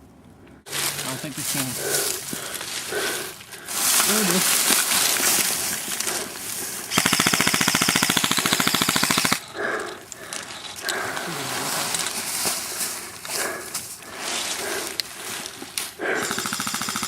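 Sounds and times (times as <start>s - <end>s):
airsoft rifle full-auto burst: 6.9s - 9.5s, 16.2s - 17.0s.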